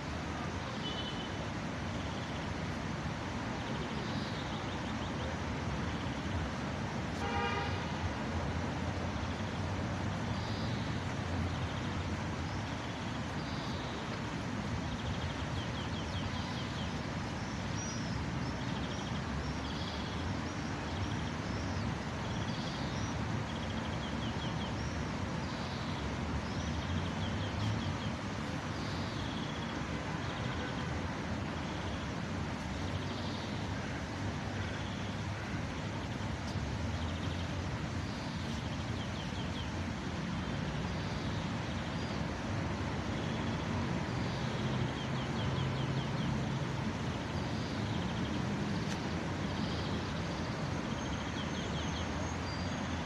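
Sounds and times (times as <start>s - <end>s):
city street traffic: 0.0s - 53.0s
car horn honking: 7.2s - 7.9s.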